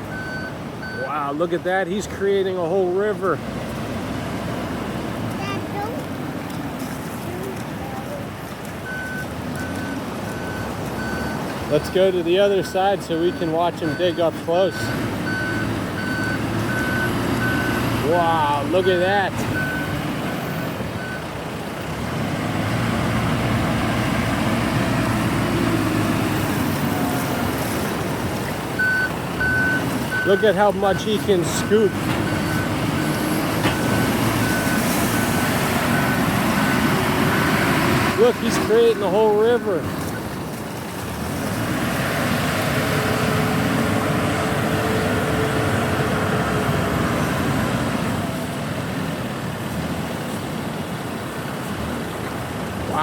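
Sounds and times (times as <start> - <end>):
backhoe diesel engine digging: 0.0 - 53.0
reversing beeps: 0.1 - 1.2, 8.8 - 12.0, 12.6 - 21.2, 28.8 - 39.8.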